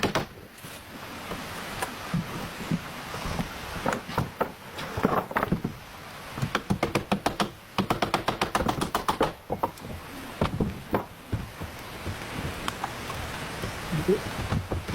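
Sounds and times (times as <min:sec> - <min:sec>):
hammer knocking on wood: 0:06.4 - 0:12.8, 0:13.6 - 0:14.9.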